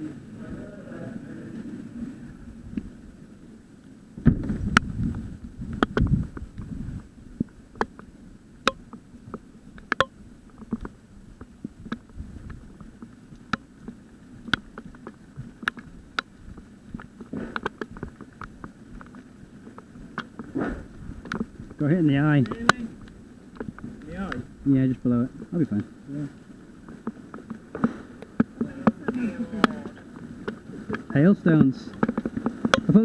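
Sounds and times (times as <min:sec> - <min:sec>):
low rumbling noise: 0:00.0 - 0:33.0
hailstones striking: 0:08.7 - 0:33.0.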